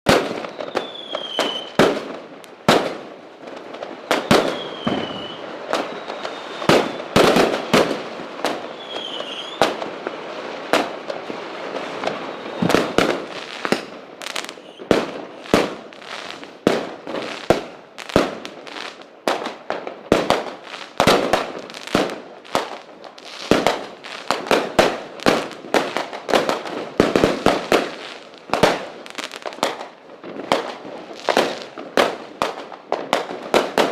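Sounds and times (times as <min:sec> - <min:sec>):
falling firework whistles: 0:00.1 - 0:02.2, 0:04.0 - 0:10.9, 0:11.7 - 0:19.1
fireworks bangs and pops: 0:00.1 - 0:33.9
fireworks crackling: 0:00.1 - 0:33.9.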